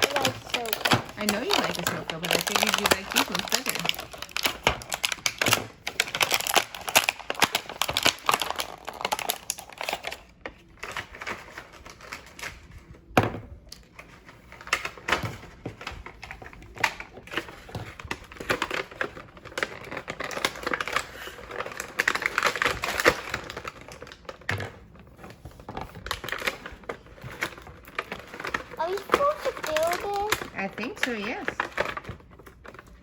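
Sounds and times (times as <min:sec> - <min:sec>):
plastic pieces clicking and rattling: 0:00.0 - 0:12.6, 0:13.7 - 0:24.8, 0:25.8 - 0:33.0.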